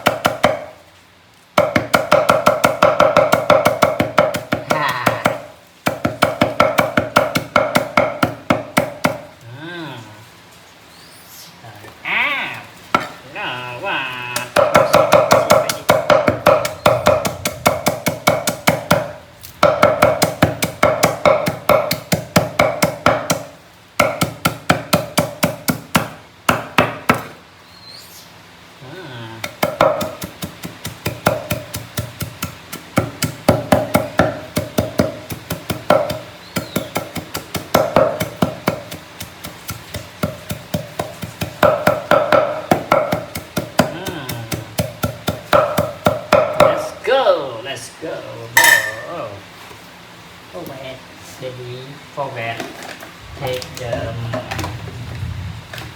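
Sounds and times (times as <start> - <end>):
knife chopping on cutting board: 0.0 - 0.7, 1.6 - 9.2, 14.4 - 27.3, 29.4 - 46.7.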